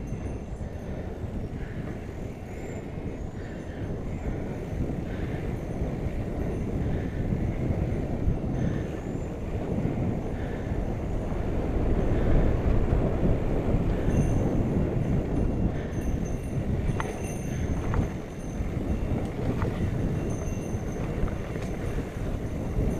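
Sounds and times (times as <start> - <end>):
bike tyres rumbling on dirt: 0.0 - 22.9
wind on microphone: 0.0 - 22.9
bike rattle: 3.3 - 22.9.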